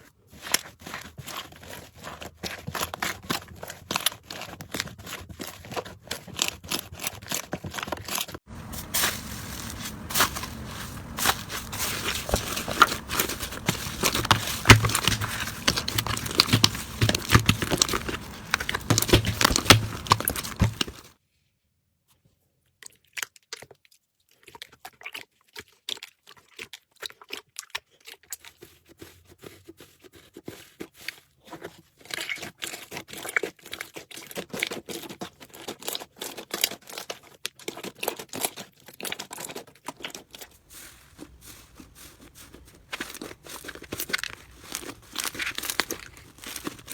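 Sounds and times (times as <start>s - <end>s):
slime crackling and popping: 8.8s - 21.1s, 40.8s - 46.9s.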